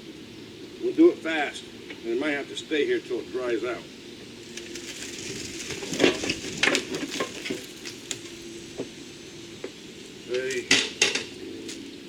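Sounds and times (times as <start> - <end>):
heavy filter hauled on wheeled carrier: 4.4 - 11.9.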